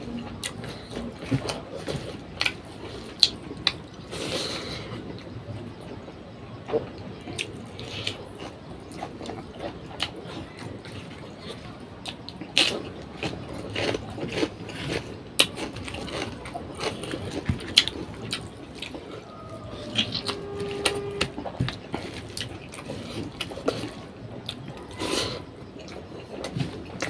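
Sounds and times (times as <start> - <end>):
chewing with wet mouth smacks: 6.7 - 19.2.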